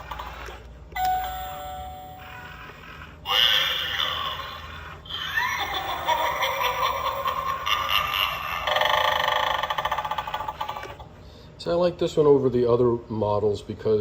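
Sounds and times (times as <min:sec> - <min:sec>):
electronic doorbell sound effect: 0:01.0 - 0:02.8.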